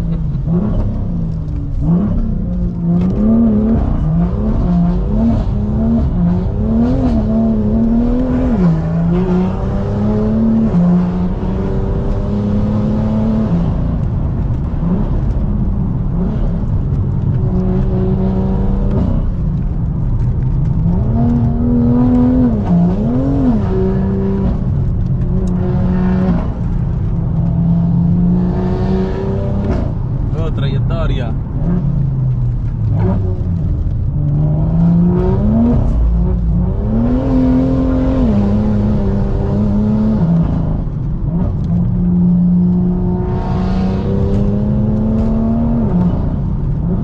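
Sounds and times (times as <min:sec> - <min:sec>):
car engine revving hard: 0:01.8 - 0:13.8, 0:27.4 - 0:32.0, 0:32.9 - 0:47.0.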